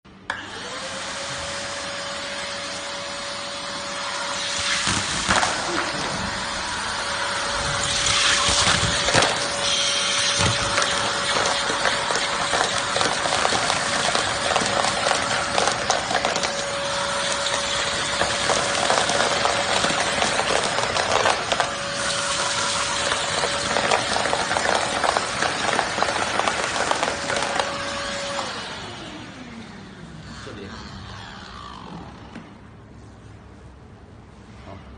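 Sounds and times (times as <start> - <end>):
vacuum cleaner running: 0.1 - 33.3
motor winding down: 0.3 - 32.8
crackles and rattles: 7.5 - 28.4.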